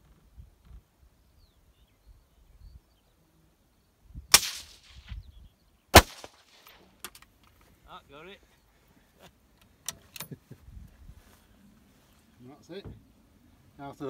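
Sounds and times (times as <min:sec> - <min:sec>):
rifle shots: 0:04.3 - 0:05.1, 0:05.9 - 0:06.8.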